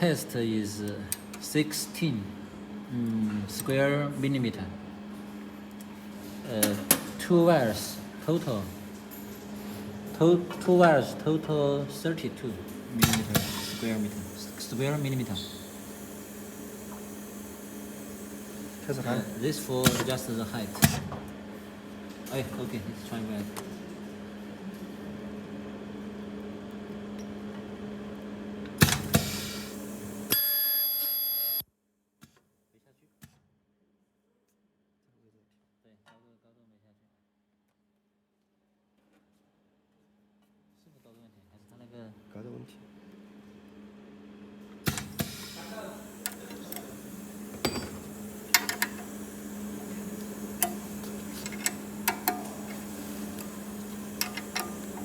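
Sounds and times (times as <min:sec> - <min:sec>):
machine humming: 0:06.3 - 0:22.1, 0:44.8 - 0:55.0
high-pitched ultrasonic whine: 0:13.0 - 0:20.8, 0:29.4 - 0:31.6, 0:45.0 - 0:55.0.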